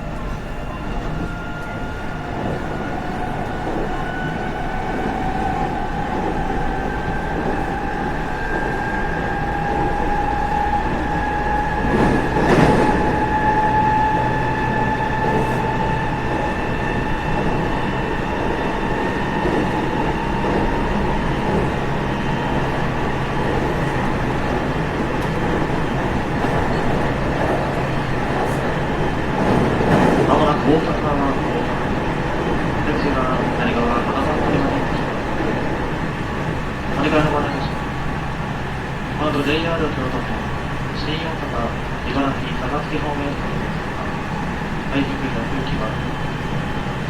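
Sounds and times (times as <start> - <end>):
train wheels rumbling: 0.0 - 47.0.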